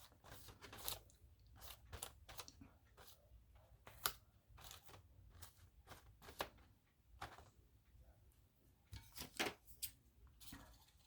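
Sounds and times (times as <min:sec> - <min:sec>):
paper rustling: 0:00.0 - 0:07.6.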